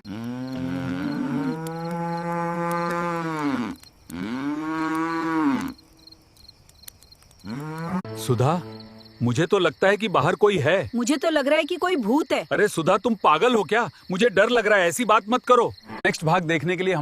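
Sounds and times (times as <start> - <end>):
cow mooing: 0.0 - 5.8, 7.4 - 9.1
crickets chirping: 0.0 - 17.0.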